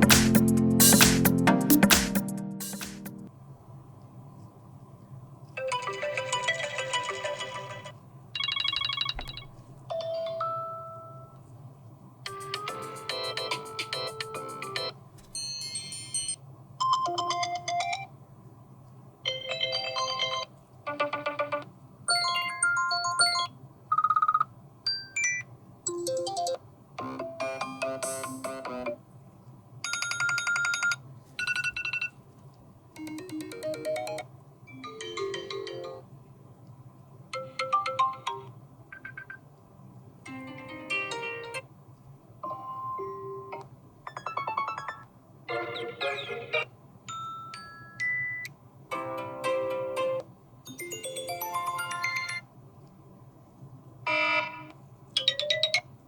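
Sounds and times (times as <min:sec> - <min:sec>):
phone ringtone snippets: 0:05.6 - 0:11.4, 0:29.8 - 0:32.1, 0:50.8 - 0:52.4.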